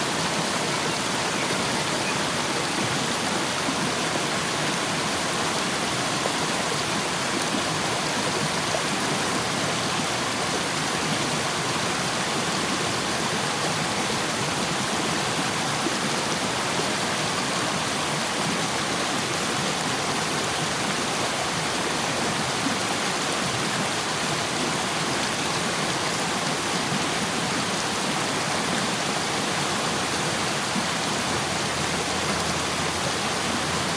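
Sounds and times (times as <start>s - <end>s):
river rushing over rocks: 0.0s - 33.9s.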